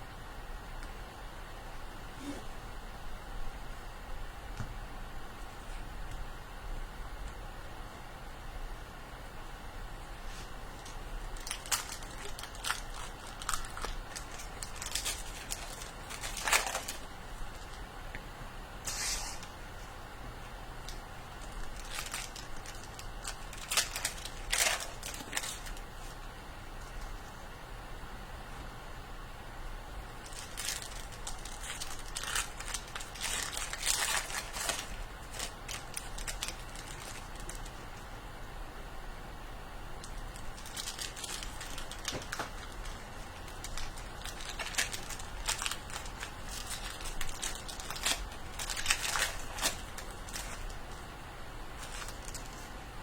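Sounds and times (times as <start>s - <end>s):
low steady hum: 0.0s - 53.0s
plastic wrapping crinkling: 10.7s - 17.9s, 20.8s - 26.2s, 30.2s - 38.0s, 40.0s - 51.1s, 51.7s - 52.8s.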